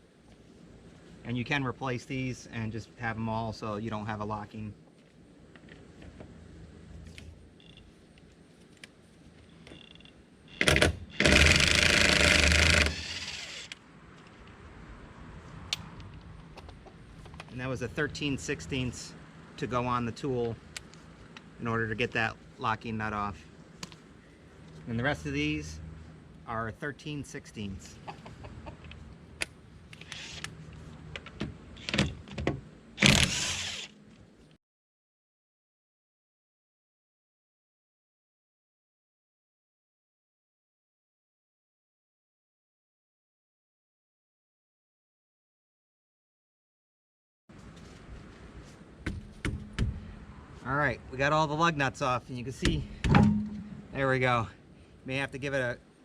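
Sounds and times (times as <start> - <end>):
power tool spinning lug nuts: 10.6 - 13.8, 30.0 - 30.5, 33.0 - 34.0
impact wrench hammering: 49.1 - 50.0, 52.6 - 54.0.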